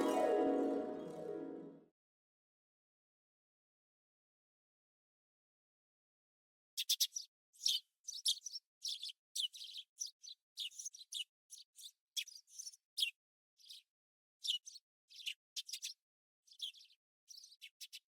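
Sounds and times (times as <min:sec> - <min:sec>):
small birds chirping: 0:06.8 - 0:18.0.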